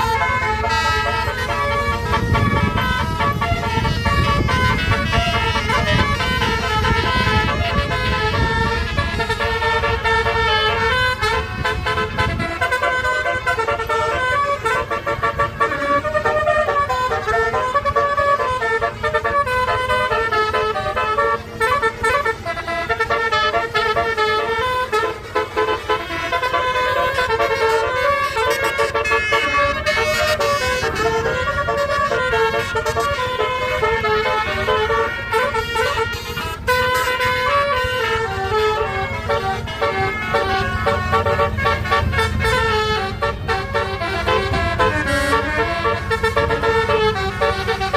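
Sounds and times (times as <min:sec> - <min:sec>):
multi-tone bus air horn tune: 0:00.0 - 0:47.9.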